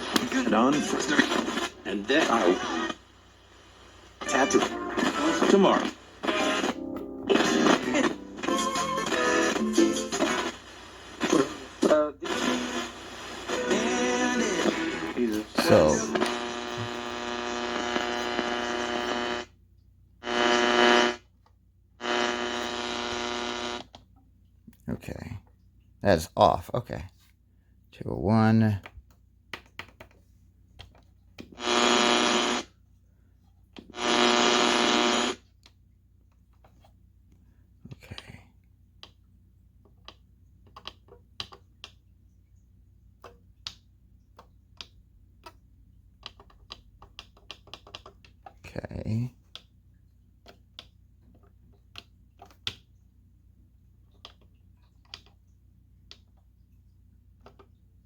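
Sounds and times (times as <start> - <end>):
alarm clock buzzer: 20.2 - 21.2, 22.0 - 23.9, 31.6 - 32.7, 34.0 - 35.4.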